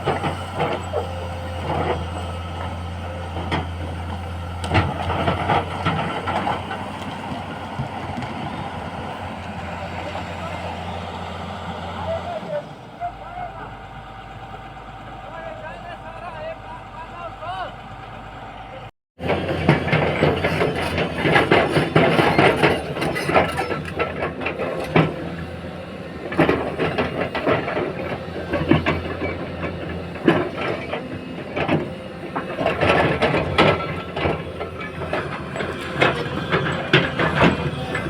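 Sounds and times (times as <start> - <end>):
excavator diesel engine running: 0.0 - 38.0
machine knocks and rattles: 19.2 - 25.5, 26.2 - 38.0.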